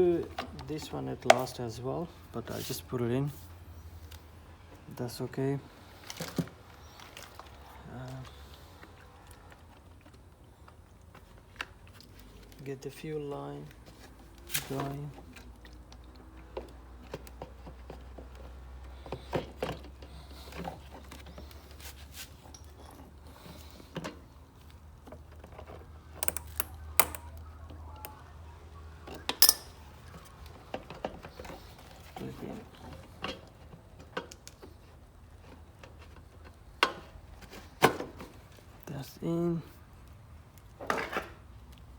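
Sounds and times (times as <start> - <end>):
hand tools and parts clinking: 17.0 - 24.3, 25.1 - 27.4, 29.1 - 34.6.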